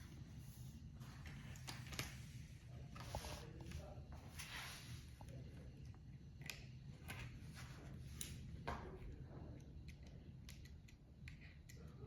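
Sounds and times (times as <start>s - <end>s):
soft rustles: 0.0s - 5.4s
low steady hum: 0.0s - 12.0s.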